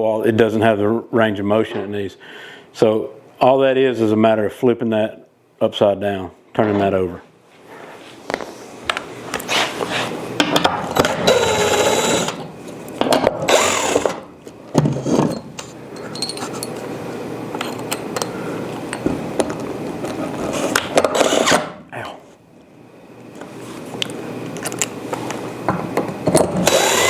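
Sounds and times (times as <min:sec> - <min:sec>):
power drill spinning: 0:11.0 - 0:12.4, 0:13.5 - 0:14.3, 0:20.6 - 0:21.7, 0:26.6 - 0:27.0.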